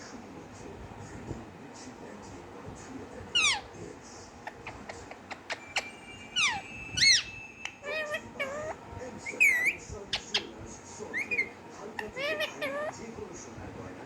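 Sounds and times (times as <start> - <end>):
parrot whistled calls: 5.3 - 10.5, 11.2 - 12.9.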